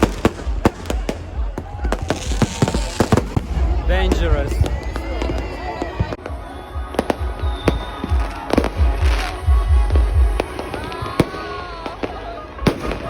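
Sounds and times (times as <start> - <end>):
fireworks bangs and pops: 0.0 - 13.0
music with thumping beat: 6.1 - 10.8.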